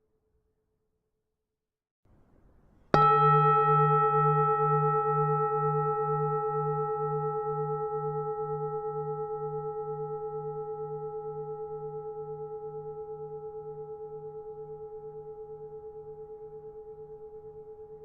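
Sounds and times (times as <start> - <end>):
temple bell ringing: 3.0 - 11.9.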